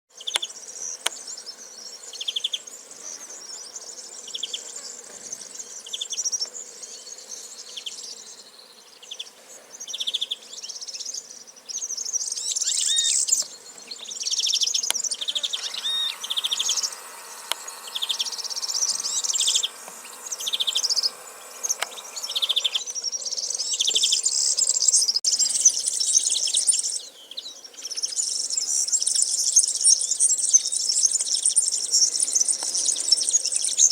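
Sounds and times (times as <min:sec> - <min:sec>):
insects buzzing: 0:00.1 - 0:33.9
bird chirps: 0:00.2 - 0:33.9
short buzzy trills: 0:14.7 - 0:25.2.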